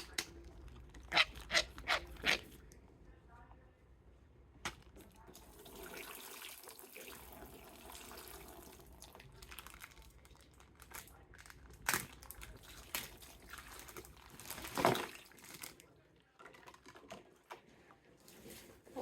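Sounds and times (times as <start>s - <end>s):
loud plastic crackles: 9.2s - 15.9s
plastic packaging crinkling: 9.2s - 15.9s.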